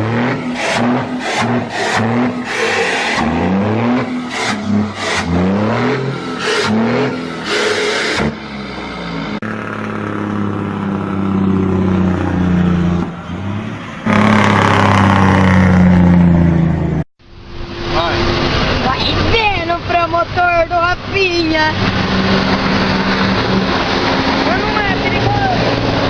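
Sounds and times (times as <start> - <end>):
vehicle engine revving: 0.0 - 26.0.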